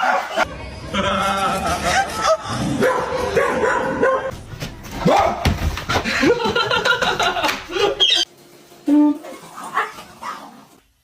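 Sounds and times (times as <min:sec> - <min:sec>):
dog barking and yipping: 0:00.0 - 0:00.5, 0:02.8 - 0:04.3.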